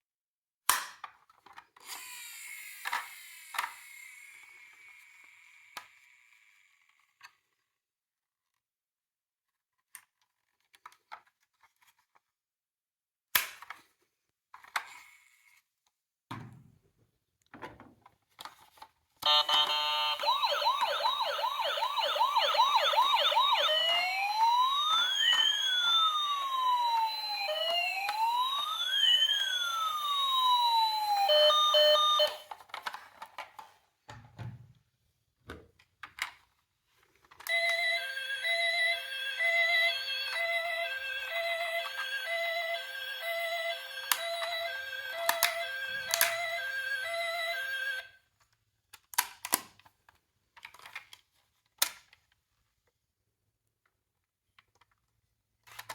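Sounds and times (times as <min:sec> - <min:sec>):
toy electronic siren: 0:19.2 - 0:32.5, 0:37.4 - 0:48.2.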